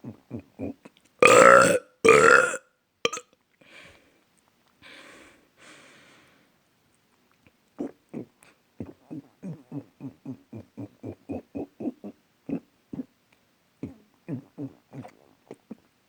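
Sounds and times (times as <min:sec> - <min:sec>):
loud burp: 0:01.2 - 0:03.2.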